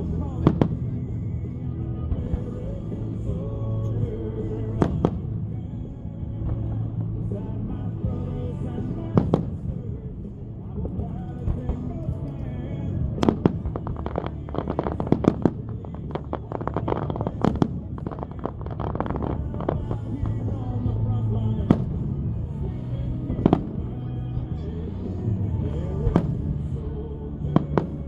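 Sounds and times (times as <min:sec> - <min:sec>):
music playing: 0:00.0 - 0:28.0
fireworks popping and banging: 0:02.1 - 0:23.8.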